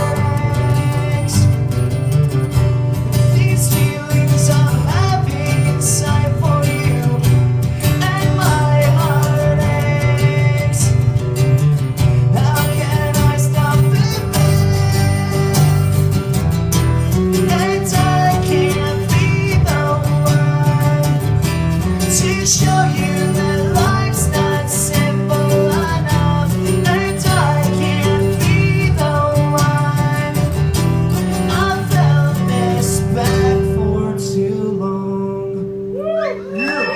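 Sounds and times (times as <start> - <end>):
acoustic guitars strumming: 0.0 - 36.9
held guitar note ringing: 36.5 - 36.9.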